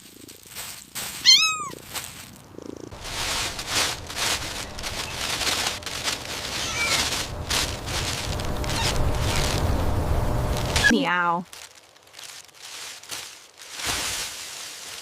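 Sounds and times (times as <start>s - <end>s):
cat meowing faintly: 1.2s - 1.8s, 6.5s - 7.1s
steady rough noise: 2.9s - 10.9s.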